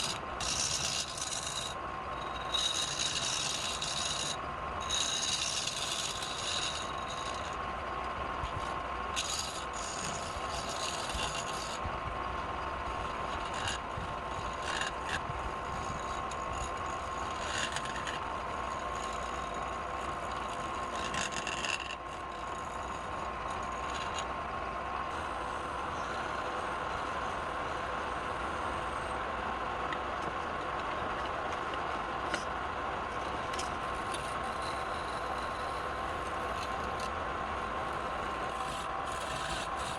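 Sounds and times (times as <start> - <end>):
tool scraping spinning wood: 0.0 - 12.2, 12.8 - 39.9
wood lathe humming and whining: 0.0 - 39.9.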